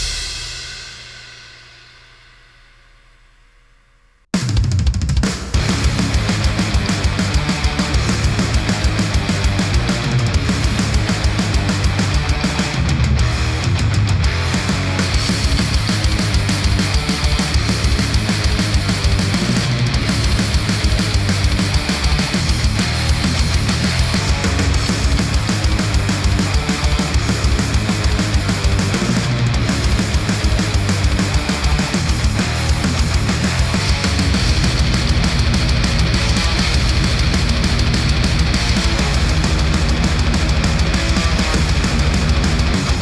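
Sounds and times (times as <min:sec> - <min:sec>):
heavy rock music through headphones: 0:00.0 - 0:01.3, 0:04.4 - 0:43.0.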